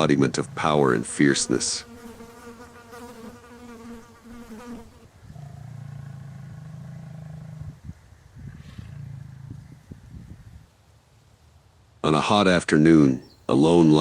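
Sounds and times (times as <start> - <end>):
fly buzzing: 0.6 - 5.1
lion growling: 5.3 - 7.8, 8.4 - 9.6.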